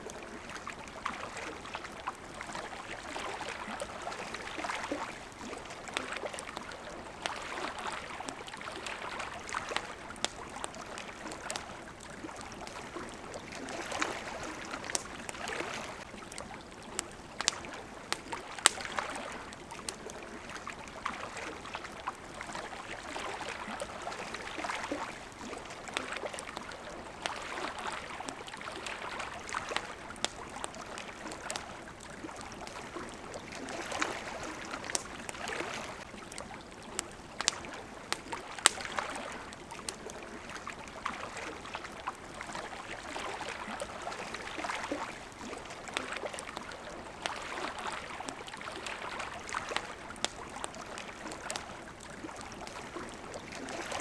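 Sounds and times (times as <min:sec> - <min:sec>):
campfire crackling: 0:00.0 - 0:54.0
water lapping: 0:00.0 - 0:54.0.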